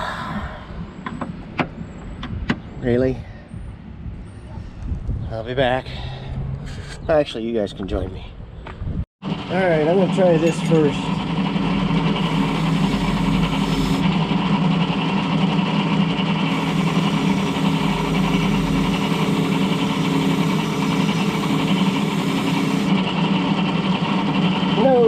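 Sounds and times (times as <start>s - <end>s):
power tool motor humming: 11.9s - 14.2s, 16.5s - 23.0s.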